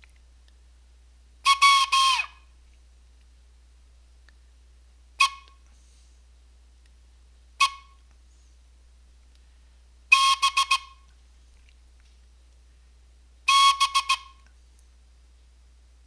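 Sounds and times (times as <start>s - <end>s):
morse code on a whistle: 1.4s - 2.4s, 5.2s - 5.6s, 7.6s - 8.0s, 10.1s - 11.1s, 13.5s - 14.4s.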